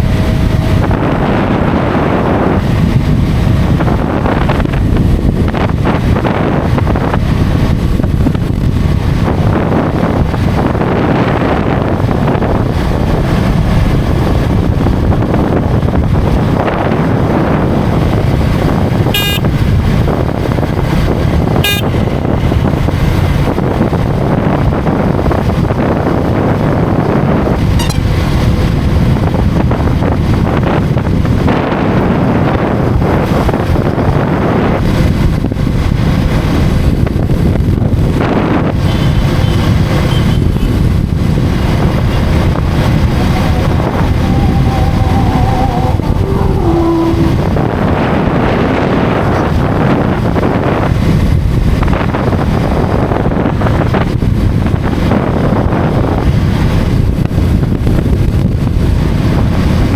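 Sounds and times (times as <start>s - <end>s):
motorcycle engine: 0.0s - 24.2s, 38.9s - 48.3s
road noise: 0.0s - 59.9s
wind rush on microphone: 0.0s - 59.9s
horn beeps: 19.1s - 19.5s, 21.6s - 22.2s, 27.8s - 28.2s, 43.0s - 47.6s.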